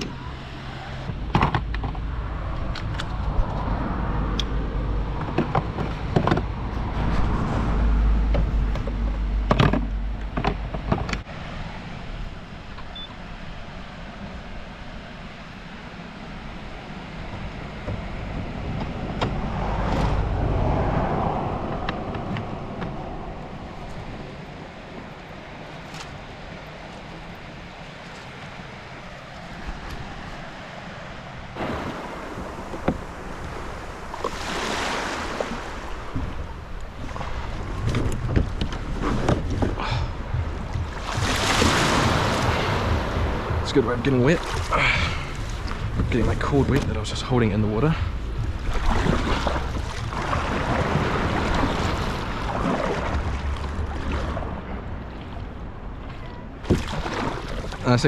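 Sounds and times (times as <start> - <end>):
water splashing around kayak: 0.0 - 58.0
wind buffeting microphone: 16.3 - 28.1, 31.5 - 58.0.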